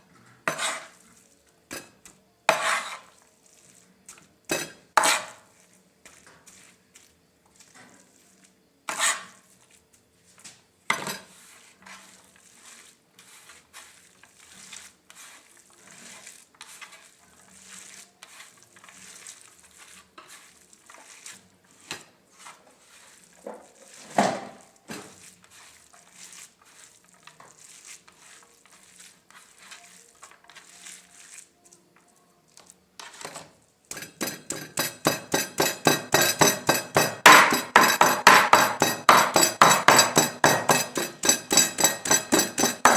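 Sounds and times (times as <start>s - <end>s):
utensils and dishes clinking: 4.5s - 5.1s, 33.9s - 42.9s
fast chopping on a board: 33.9s - 42.9s.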